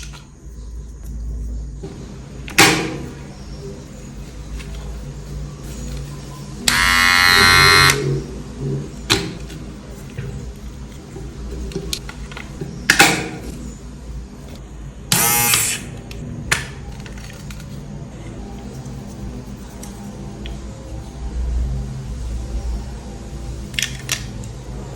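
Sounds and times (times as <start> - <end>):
beard trimmer motor buzzing: 6.7 - 8.1, 15.1 - 15.9.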